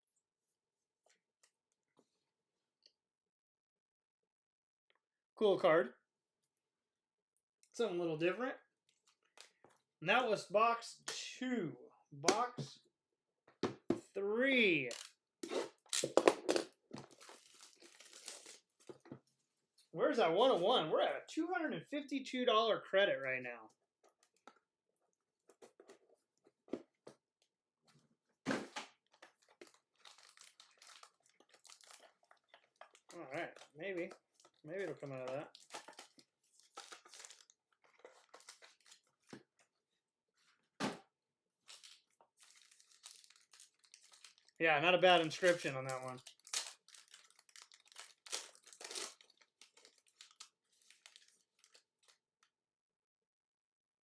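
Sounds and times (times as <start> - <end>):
packaging clicks and rustles: 15.9 - 19.1, 28.6 - 39.7, 41.6 - 44.6, 45.2 - 52.2.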